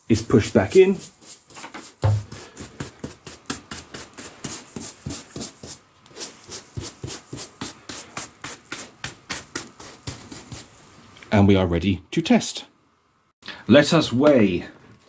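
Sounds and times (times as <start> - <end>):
sand swept across carpet: 0.2 - 11.0.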